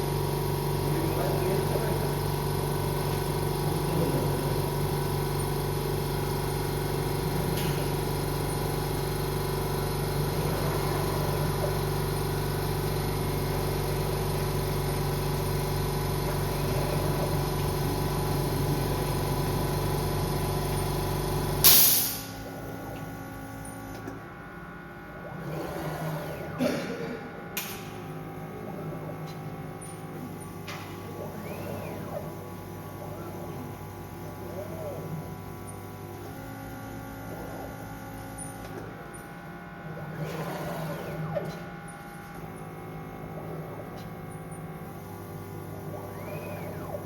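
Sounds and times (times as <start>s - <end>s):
machine humming with tones: 0.0s - 47.0s
loud burst of noise: 21.6s - 22.4s.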